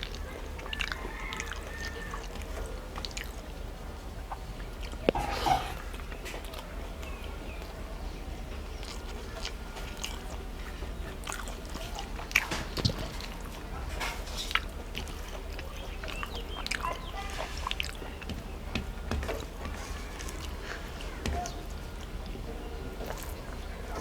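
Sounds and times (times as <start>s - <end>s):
wet chewing: 0.0s - 24.0s
steady low hum: 2.3s - 24.0s.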